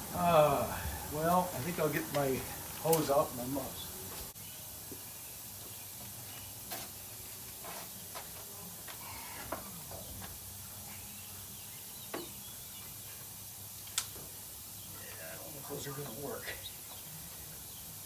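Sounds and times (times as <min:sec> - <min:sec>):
steady low hum: 0:00.0 - 0:04.4.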